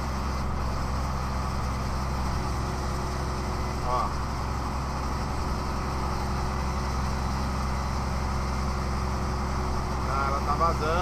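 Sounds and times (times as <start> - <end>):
diesel engine running under load: 0.0 - 11.0.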